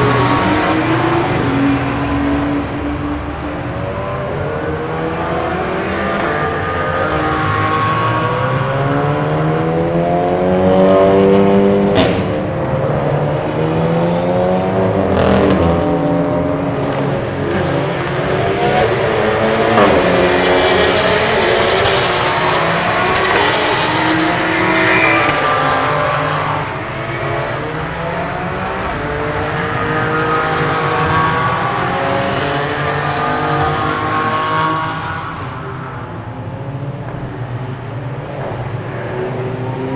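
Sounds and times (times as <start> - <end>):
race car engines at high revs: 0.0 - 39.9
sharp crack: 12.0 - 12.8.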